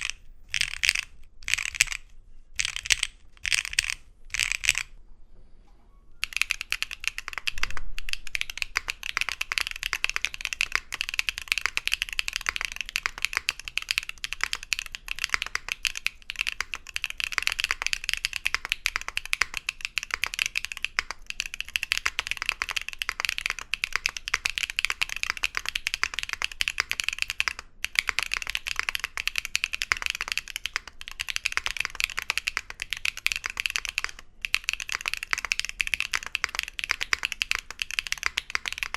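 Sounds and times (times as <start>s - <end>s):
fast typing on mechanical keyboard: 0.0s - 2.0s, 2.6s - 4.9s, 6.2s - 38.9s.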